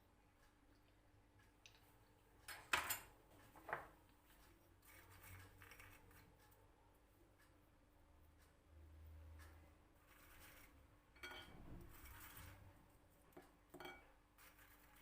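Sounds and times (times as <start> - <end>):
kitchenware clinking: 2.5 - 3.9, 11.2 - 12.2, 13.7 - 14.1
soft scraping: 10.0 - 12.9.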